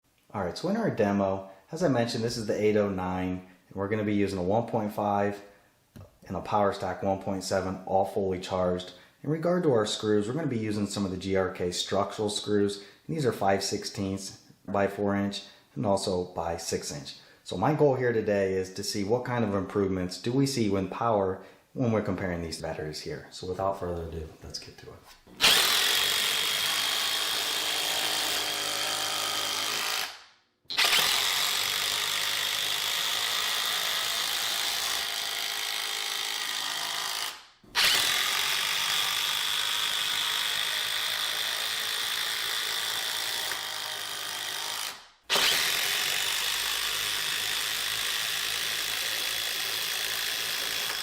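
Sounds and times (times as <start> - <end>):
impact driver driving wood screws: 25.3 - 51.0.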